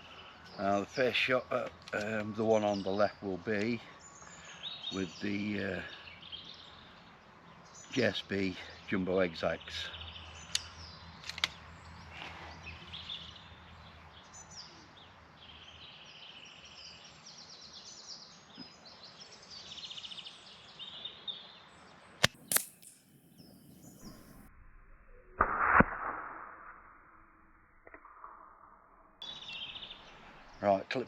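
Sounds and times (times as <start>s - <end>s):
birds singing: 0.0s - 24.5s, 29.2s - 31.0s
air rifle shot: 22.2s - 24.5s, 25.4s - 26.9s.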